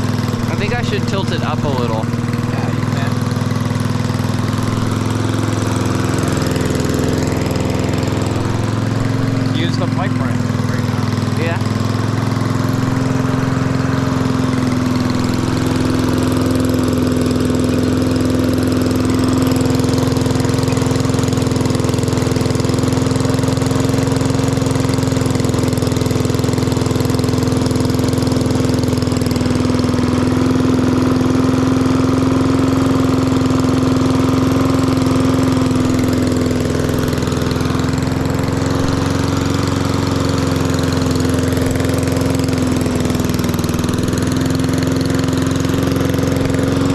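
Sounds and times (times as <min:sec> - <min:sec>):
lawn mower engine running: 0:00.0 - 0:46.9.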